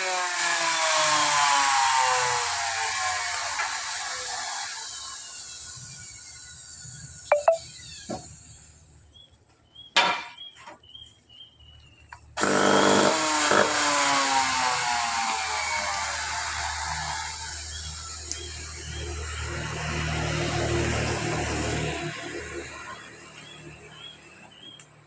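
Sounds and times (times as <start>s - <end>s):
electric power tool running: 12.4s - 22.0s.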